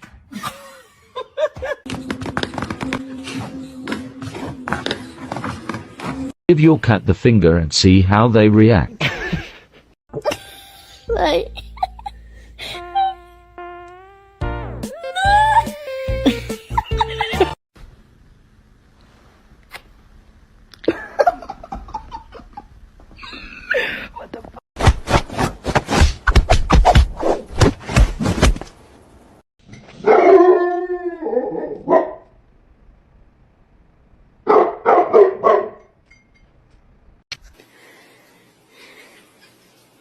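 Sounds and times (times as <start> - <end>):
dog barking: 30.0 - 30.6, 31.7 - 32.3, 34.5 - 35.9.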